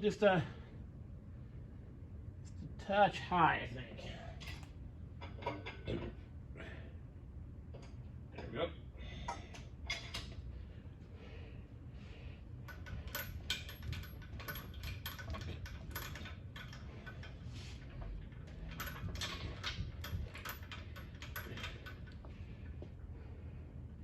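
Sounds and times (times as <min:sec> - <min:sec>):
metallic clinks and rattles: 0:12.7 - 0:22.8.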